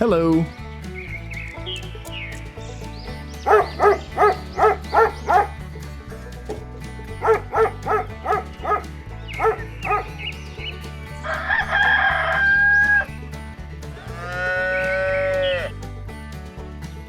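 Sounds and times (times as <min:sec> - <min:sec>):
hen clucking: 0:00.0 - 0:16.1
background music with steady beat: 0:00.0 - 0:17.0
cow mooing: 0:14.0 - 0:15.7.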